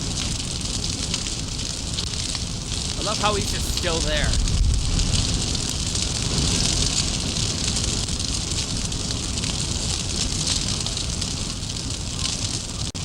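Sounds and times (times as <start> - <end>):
large fire crackling: 0.0 - 13.0.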